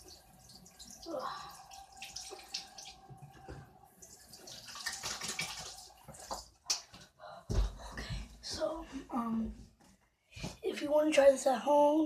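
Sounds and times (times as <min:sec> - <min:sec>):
tap water splashing: 0:00.0 - 0:07.7.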